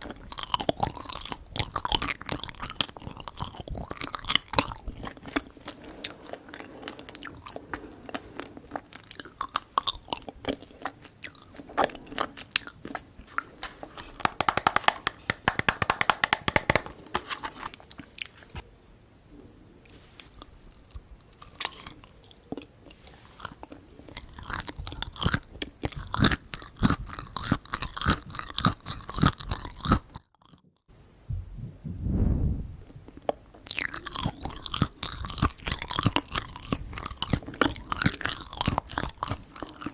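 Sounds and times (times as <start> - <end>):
person chewing crunchy sweets: 0.0 - 15.4, 20.3 - 30.6, 33.2 - 39.9
brief low sound: 31.3 - 33.0.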